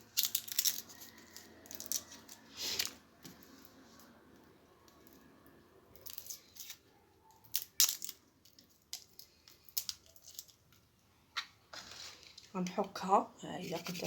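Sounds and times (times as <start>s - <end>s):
garlic skin crackling and tearing: 0.0s - 3.0s, 7.4s - 10.7s.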